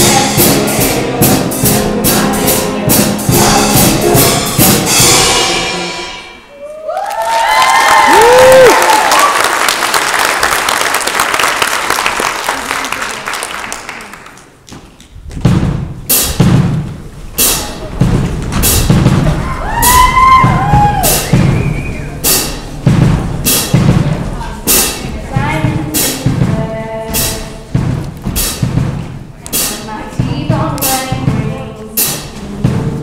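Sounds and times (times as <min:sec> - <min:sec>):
drum-heavy beat: 0:00.0 - 0:06.4, 0:15.2 - 0:33.0
people whooping: 0:06.5 - 0:09.6, 0:19.4 - 0:22.2
audience cheering and applauding: 0:06.5 - 0:14.6, 0:19.3 - 0:22.2.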